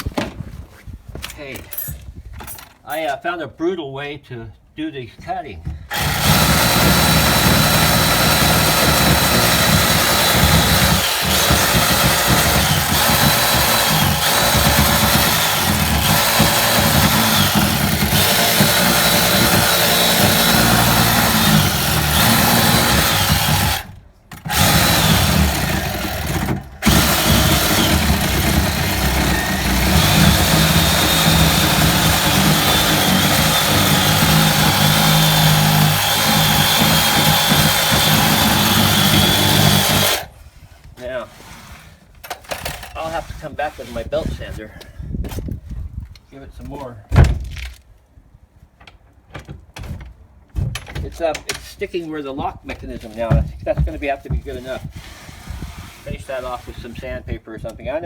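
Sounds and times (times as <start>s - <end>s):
power tool cutting wood: 5.9s - 40.3s.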